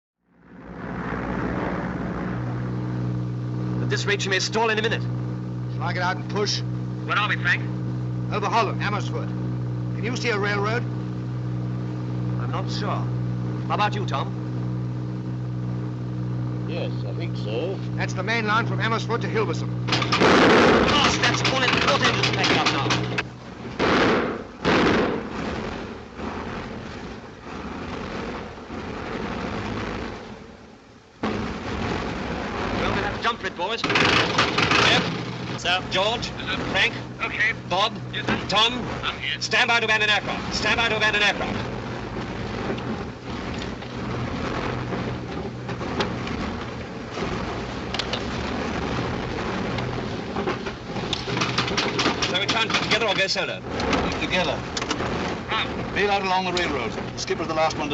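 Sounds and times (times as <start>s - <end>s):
aircraft engines droning: 0.3s - 25.3s, 32.4s - 57.9s
loud noise bursts: 0.3s - 57.9s
slipstream rushing: 18.0s - 57.9s.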